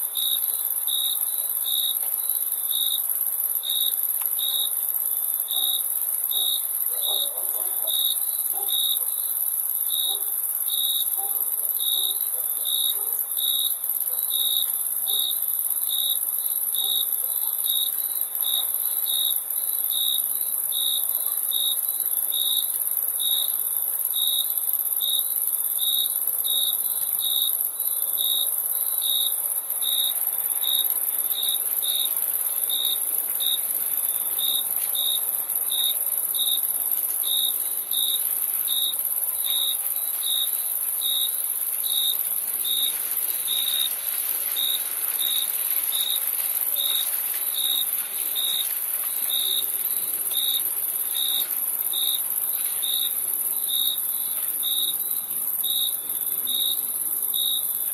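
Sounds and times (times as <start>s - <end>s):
crickets chirping: 0.0s - 57.9s
high-pitched insect trill: 17.6s - 57.9s.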